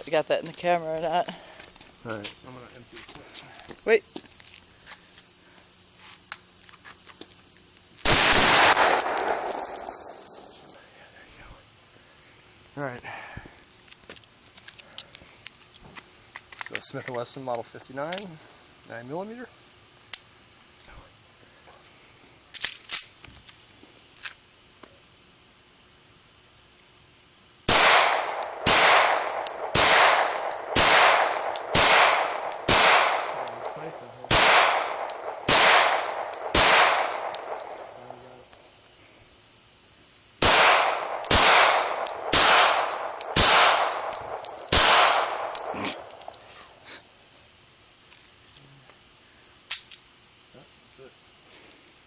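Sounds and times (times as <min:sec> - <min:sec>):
pistol shots with ringing echo: 0:08.1 - 0:10.8, 0:27.7 - 0:38.5, 0:40.4 - 0:46.5
gun handling clicks: 0:08.6 - 0:10.4, 0:16.3 - 0:17.2, 0:22.5 - 0:23.2, 0:27.7 - 0:38.6, 0:40.4 - 0:46.5, 0:49.7 - 0:50.1.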